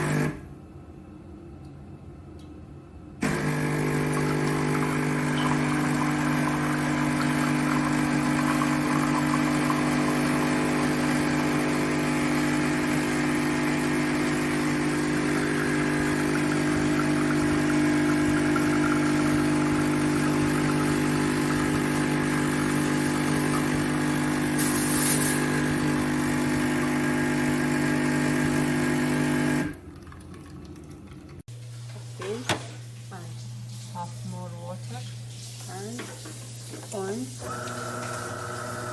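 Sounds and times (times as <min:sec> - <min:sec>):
coffee machine humming: 0:00.0 - 0:00.7, 0:03.2 - 0:33.5, 0:37.0 - 0:38.9.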